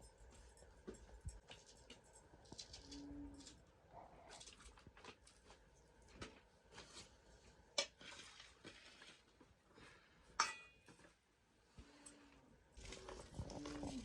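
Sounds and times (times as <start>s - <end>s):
cookware and utensils clinking: 10.4s - 10.9s.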